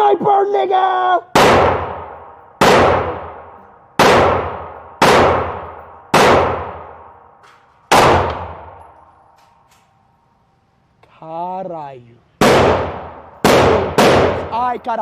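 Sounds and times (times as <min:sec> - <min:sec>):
rifle shots echoing: 0:01.3 - 0:09.0, 0:12.4 - 0:14.8.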